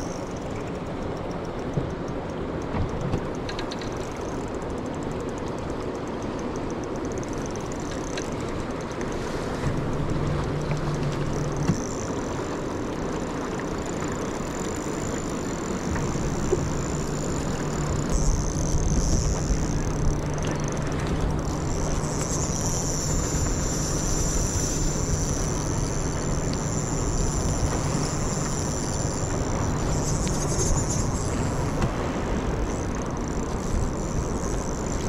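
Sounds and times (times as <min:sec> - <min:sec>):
boat engine running: 0:00.0 - 0:35.0
water noise: 0:00.0 - 0:35.0
wind: 0:00.0 - 0:35.0
low hum: 0:09.5 - 0:35.0.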